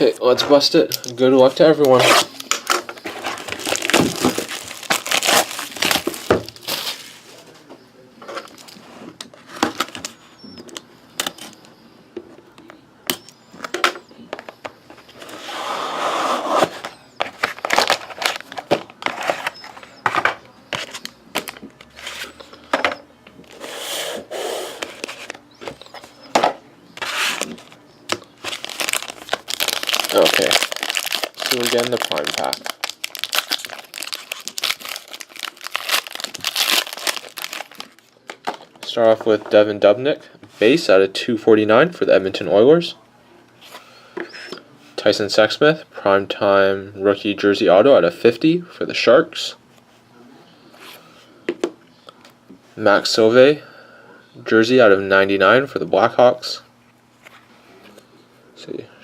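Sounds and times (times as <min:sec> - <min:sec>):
wrapping crinkling and tearing: 0:01.8 - 0:07.2, 0:17.4 - 0:19.5, 0:28.4 - 0:38.5
packaging clicks and knocks: 0:27.4 - 0:38.7.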